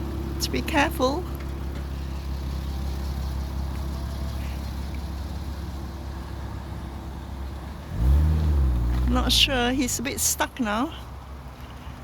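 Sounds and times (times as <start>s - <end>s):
car engine running and revving: 0.0s - 6.7s, 7.4s - 10.0s.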